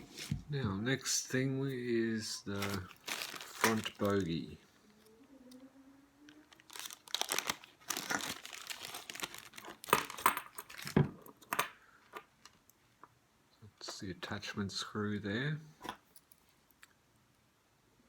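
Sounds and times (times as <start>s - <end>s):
crinkling rustle of handling: 1.7s - 4.7s, 6.2s - 11.4s.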